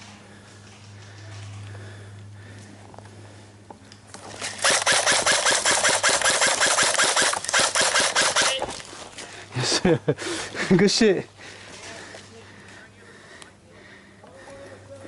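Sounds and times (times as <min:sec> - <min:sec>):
game gun firing rapid burst: 0:04.6 - 0:08.6.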